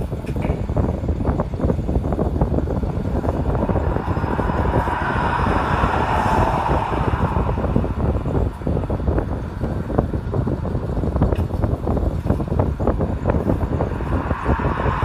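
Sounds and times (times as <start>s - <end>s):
vehicle road rumble: 0.0s - 15.0s
wind buffeting the microphone: 0.0s - 15.0s
rushing hiss of passing vehicle: 2.1s - 10.3s, 12.9s - 15.0s.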